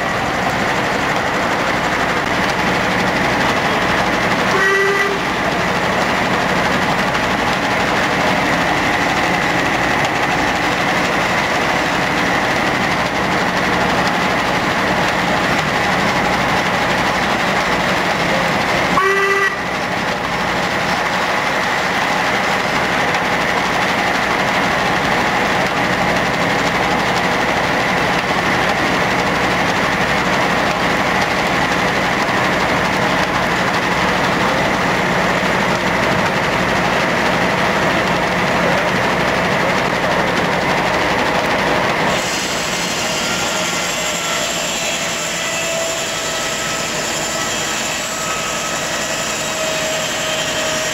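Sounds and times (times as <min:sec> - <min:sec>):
steam machinery hissing: 0:00.0 - 0:50.9
steam whistle toot: 0:04.5 - 0:05.3, 0:19.0 - 0:19.7, 0:42.2 - 0:50.9.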